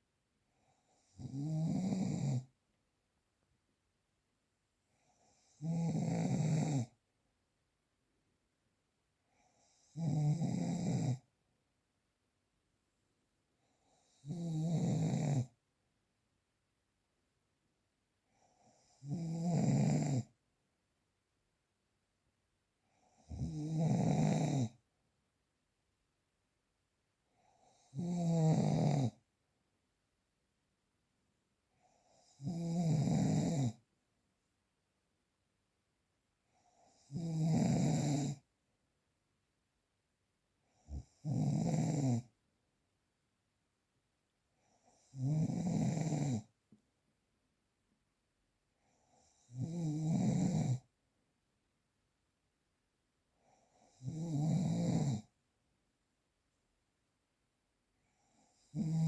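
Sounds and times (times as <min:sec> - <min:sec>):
low snoring: 0:00.9 - 0:02.5, 0:05.1 - 0:06.9, 0:09.6 - 0:11.2, 0:13.8 - 0:15.5, 0:18.6 - 0:20.3, 0:23.1 - 0:24.8, 0:27.6 - 0:29.2, 0:32.0 - 0:33.8, 0:36.8 - 0:38.4, 0:40.8 - 0:42.3, 0:44.8 - 0:46.5, 0:49.1 - 0:50.8, 0:53.5 - 0:55.3, 0:58.2 - 0:59.0.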